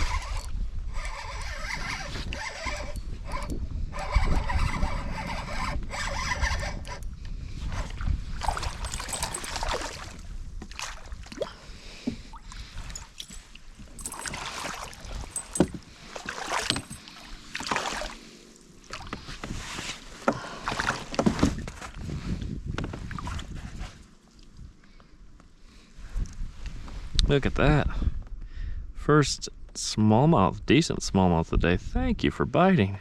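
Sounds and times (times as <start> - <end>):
water splashing against a kayak: 7.6 - 22.0.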